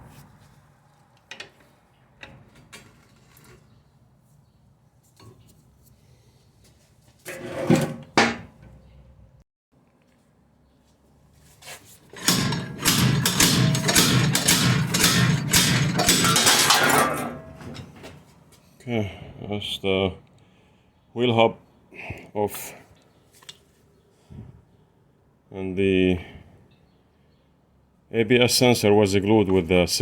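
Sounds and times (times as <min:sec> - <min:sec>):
loud hammer knocks on metal: 0:12.2 - 0:17.8.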